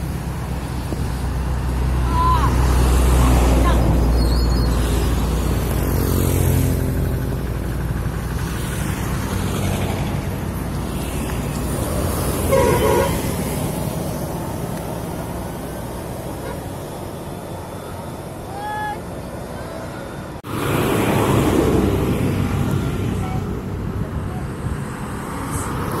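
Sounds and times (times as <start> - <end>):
bus engine rumbling: 0.0 - 26.0
short horn toot: 12.5 - 13.3.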